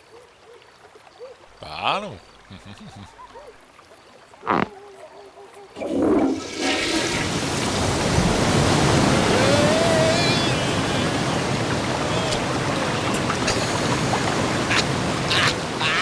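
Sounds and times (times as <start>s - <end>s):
rush of water pouring: 5.8s - 16.0s.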